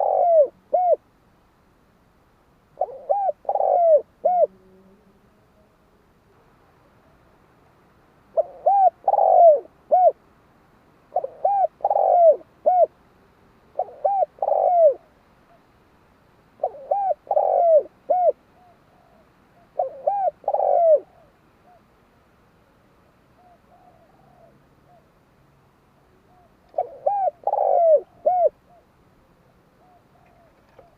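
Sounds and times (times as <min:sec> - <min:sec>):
dove cooing: 0:00.0 - 0:01.0, 0:02.8 - 0:04.8, 0:08.3 - 0:10.2, 0:11.1 - 0:13.0, 0:13.7 - 0:15.7, 0:16.6 - 0:21.9, 0:23.4 - 0:25.1, 0:26.1 - 0:30.9.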